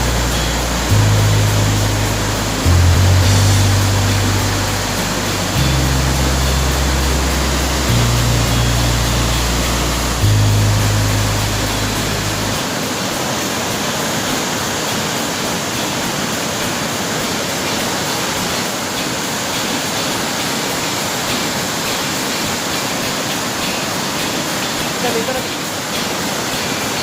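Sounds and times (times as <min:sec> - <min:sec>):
low background music: 0:00.0 - 0:13.4
waterfall rushing: 0:00.0 - 0:27.0.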